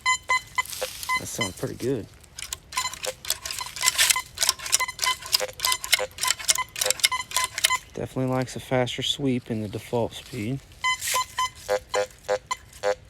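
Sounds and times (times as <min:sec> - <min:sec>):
metal detector chirps and clicks: 0:00.0 - 0:08.0, 0:10.8 - 0:13.0.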